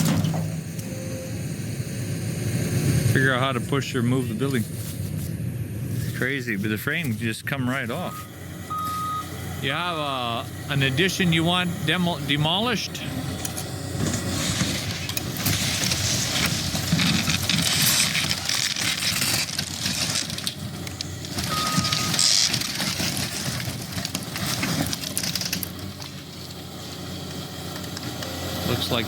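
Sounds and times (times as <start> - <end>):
excavator engine under load: 0.0 - 29.0
crashing bursts: 12.5 - 27.0
building cracking and crunching: 12.6 - 28.2.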